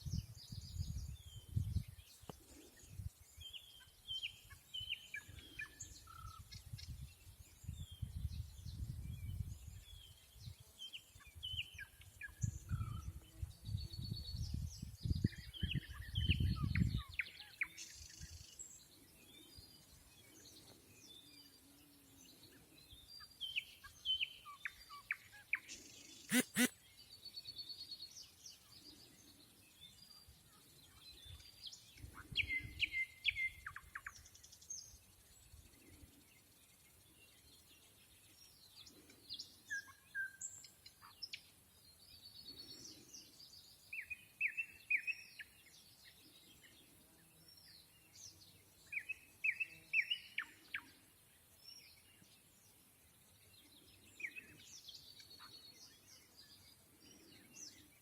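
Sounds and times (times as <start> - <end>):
small birds chirping: 0.1 - 58.0
nightingale singing: 26.3 - 26.7.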